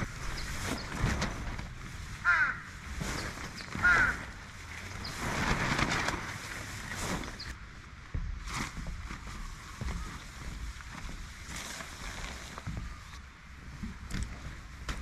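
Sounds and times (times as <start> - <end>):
bird calling: 2.2 - 5.2.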